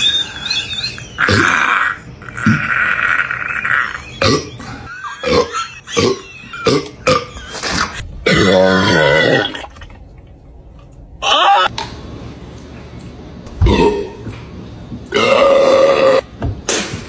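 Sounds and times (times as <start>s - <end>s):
person burping: 4.2s - 4.5s, 5.2s - 7.3s, 15.1s - 16.2s.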